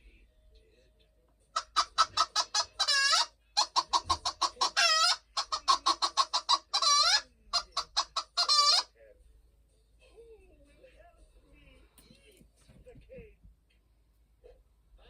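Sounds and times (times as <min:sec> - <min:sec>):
hen cackling: 0:01.6 - 0:08.9.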